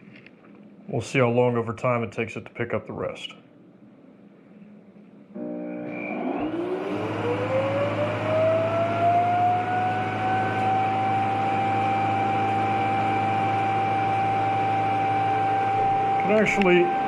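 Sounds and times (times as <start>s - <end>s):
suction motor whine: 5.4s - 17.0s.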